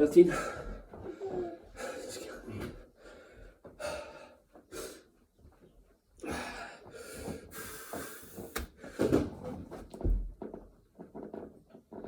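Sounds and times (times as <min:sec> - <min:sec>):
man breathing hard and wheezing: 0:00.3 - 0:05.1, 0:06.2 - 0:09.3.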